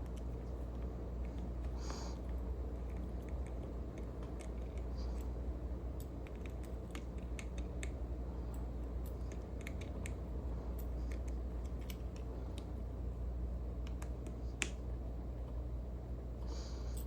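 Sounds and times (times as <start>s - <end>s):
steady low hum: 0.0s - 17.0s
small metal clicks and taps: 13.8s - 14.8s.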